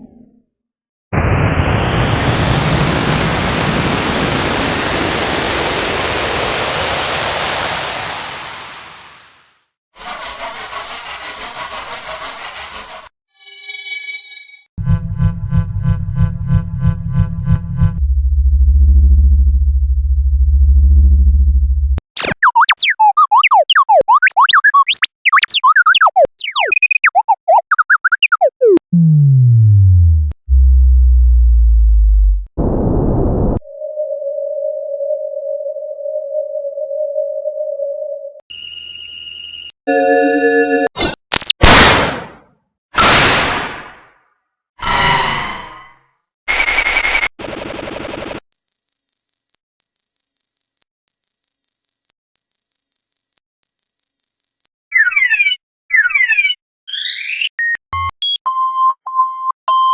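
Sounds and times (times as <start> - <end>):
glitchy static burst: 1.2 - 9.5, 46.5 - 48.4
electronic computer bleeps: 22.2 - 29.1, 54.9 - 59.9
low tone sliding downward: 28.4 - 37.6.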